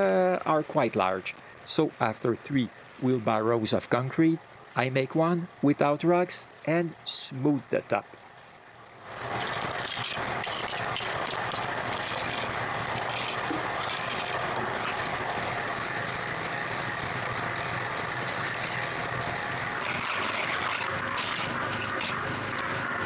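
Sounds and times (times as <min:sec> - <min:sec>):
concrete mixer churning: 0:09.0 - 0:23.0.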